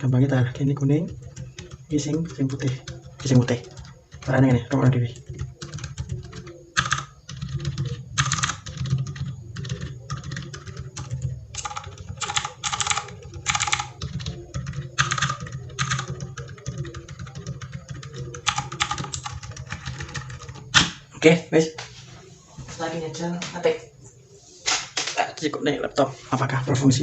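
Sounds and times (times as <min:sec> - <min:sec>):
mechanical keyboard typing: 0:00.4 - 0:21.0.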